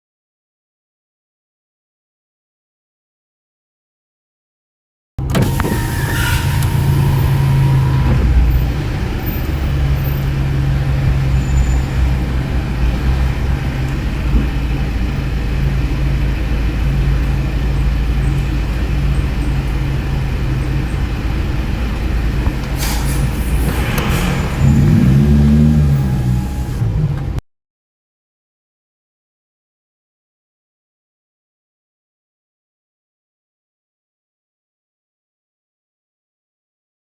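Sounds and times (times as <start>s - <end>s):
vehicle engine humming: 5.2s - 27.4s
brief hiss: 22.8s - 26.8s.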